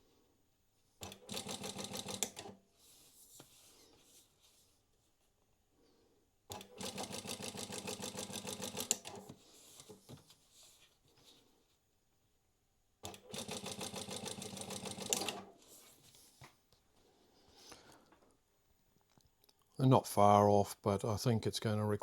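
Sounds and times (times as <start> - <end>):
sewing machine stitching: 1.0 - 2.6, 6.5 - 9.3, 13.0 - 15.6.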